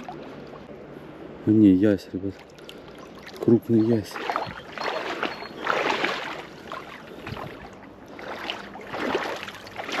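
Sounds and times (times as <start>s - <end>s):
fish splashing in water: 2.4s - 10.0s.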